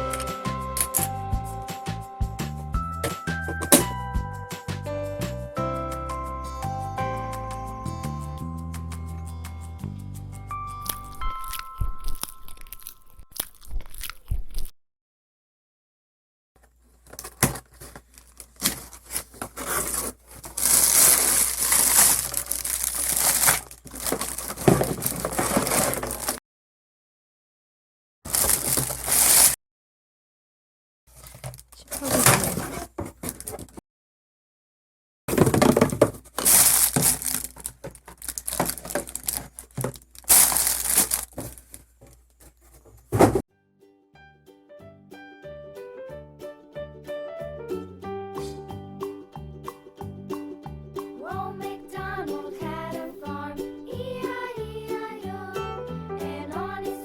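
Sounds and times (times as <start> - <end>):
crinkling and rustling: 16.6 - 26.4, 28.3 - 29.6, 31.1 - 33.8, 35.3 - 43.4.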